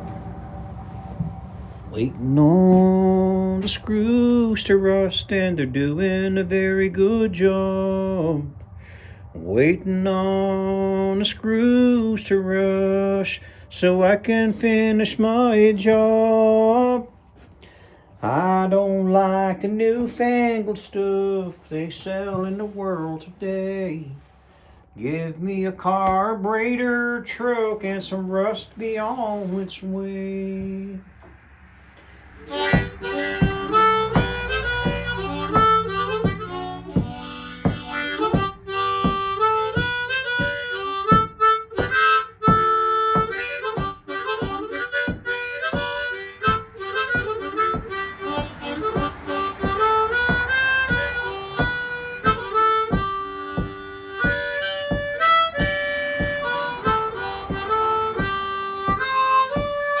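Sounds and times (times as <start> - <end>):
steady beat of sharp strokes: 0.0 - 3.9, 28.7 - 60.0
blues harmonica tune: 32.1 - 60.0.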